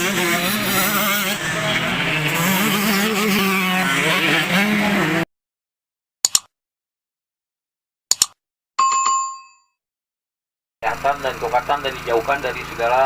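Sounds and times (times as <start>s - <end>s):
motocross bike engines revving: 0.0s - 5.3s, 10.8s - 13.0s
sharp double clicks: 6.2s - 6.5s, 8.1s - 8.4s.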